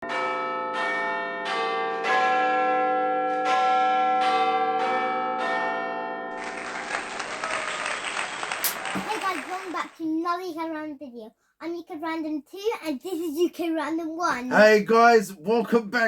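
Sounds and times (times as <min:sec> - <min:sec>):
bells ringing: 0:00.1 - 0:07.4.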